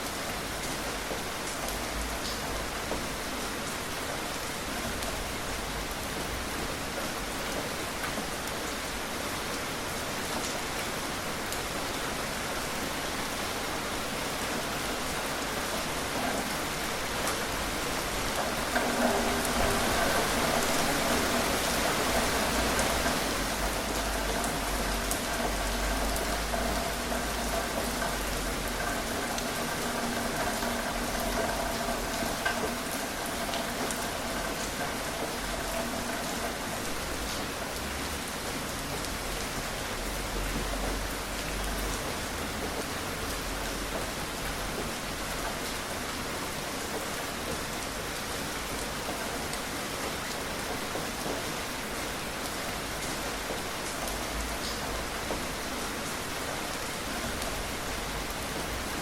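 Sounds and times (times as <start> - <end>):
steady rain hiss: 0.0 - 59.0
raindrops ticking: 14.6 - 47.9.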